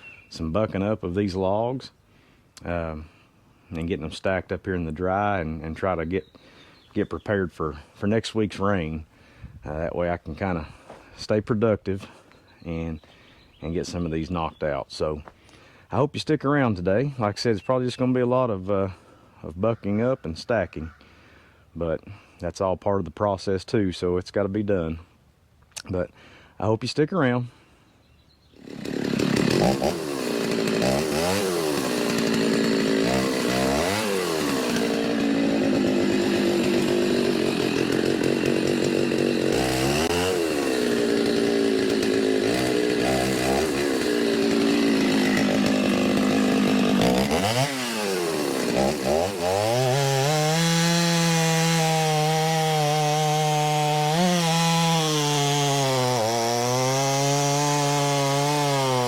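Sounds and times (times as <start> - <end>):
chainsaw cutting logs: 2.6 - 12.3, 28.6 - 59.0.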